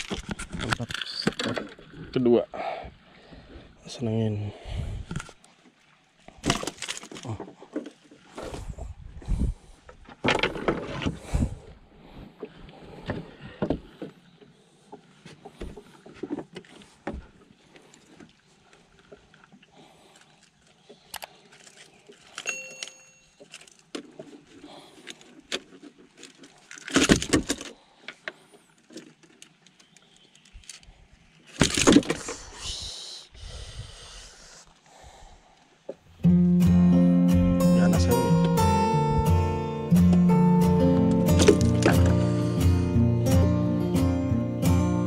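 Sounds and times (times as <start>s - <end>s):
handling clicks and knocks: 41.0s - 42.4s.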